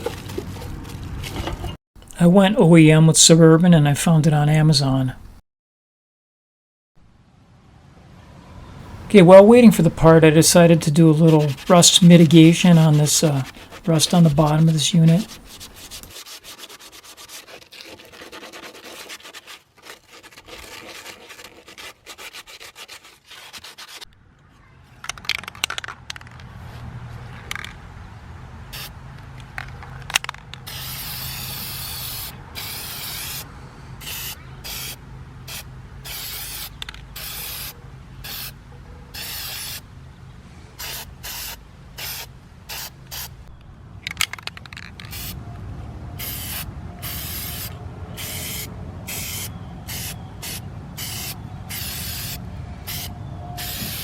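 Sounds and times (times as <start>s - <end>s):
scrubbing rust off metal: 9.3s - 24.1s
aerosol spray can hissing: 30.7s - 33.4s, 34.0s - 38.5s, 39.2s - 39.8s, 45.1s - 45.4s, 46.2s - 54.0s.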